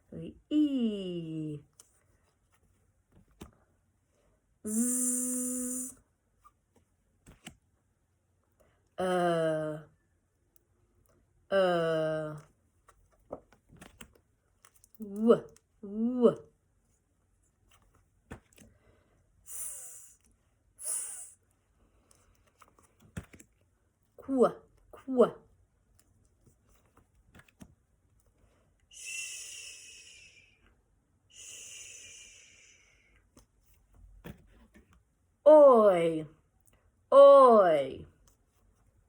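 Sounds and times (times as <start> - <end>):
voice buzzing zzz sound: 4.7 - 6.0
woman making hissing phonics sound: 4.7 - 6.0, 19.4 - 20.2, 20.8 - 21.4, 28.9 - 30.6, 31.3 - 33.2.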